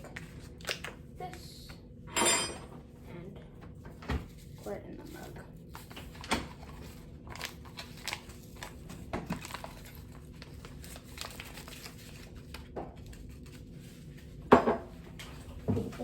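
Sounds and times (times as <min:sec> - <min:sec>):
paper packet crinkling: 0:05.0 - 0:14.1.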